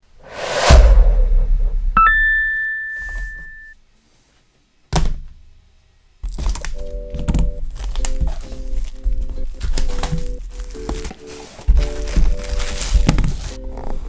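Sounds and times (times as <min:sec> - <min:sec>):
bright chime: 0:02.0 - 0:03.8.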